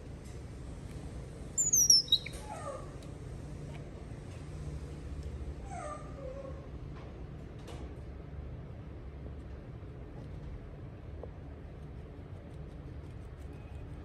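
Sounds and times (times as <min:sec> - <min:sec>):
baby monkey calling: 0:01.6 - 0:02.9.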